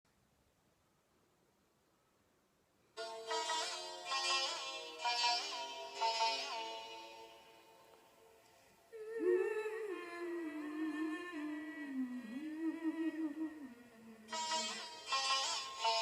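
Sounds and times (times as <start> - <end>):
woman humming: 8.9 - 14.7.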